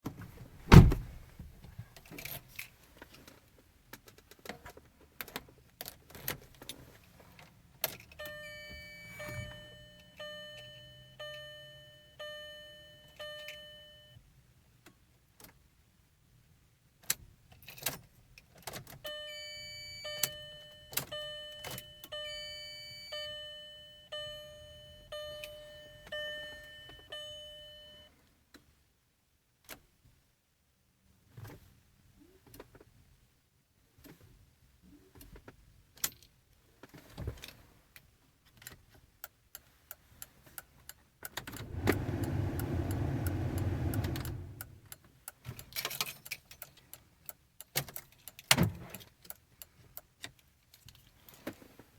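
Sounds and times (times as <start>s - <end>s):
dashboard warning chime: 8.2s - 14.2s, 19.1s - 28.1s, 41.6s - 44.8s
ignition clicks: 41.4s - 45.0s.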